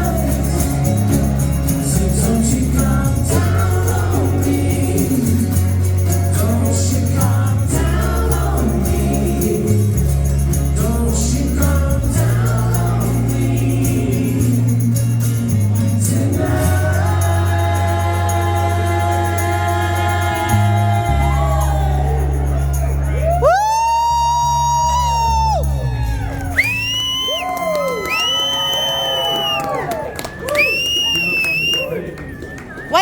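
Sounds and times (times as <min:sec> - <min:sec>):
person singing: 0:00.0 - 0:23.6
low bass notes: 0:00.0 - 0:27.1
acoustic guitar: 0:00.0 - 0:33.0.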